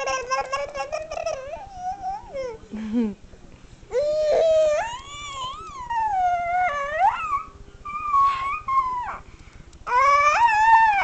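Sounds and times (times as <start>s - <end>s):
dog howling: 4.2s - 9.2s, 9.9s - 11.0s.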